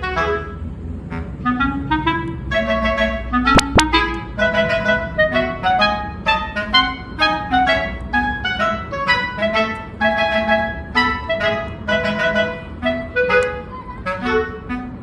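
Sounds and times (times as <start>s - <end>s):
instrumental music: 0.0s - 15.0s
sharp clicks: 3.6s - 3.9s.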